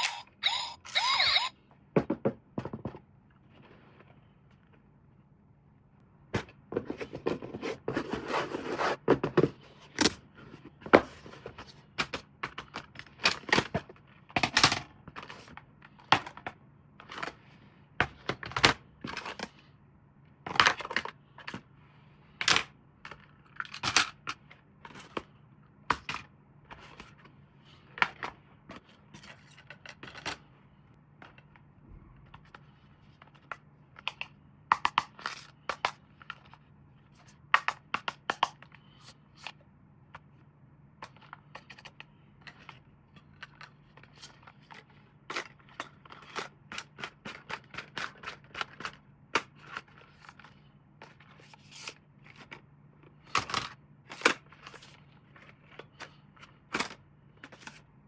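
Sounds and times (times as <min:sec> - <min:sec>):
plastic toys clicking and tapping: 0:00.0 - 0:01.5, 0:33.3 - 0:36.4, 0:44.8 - 0:50.0.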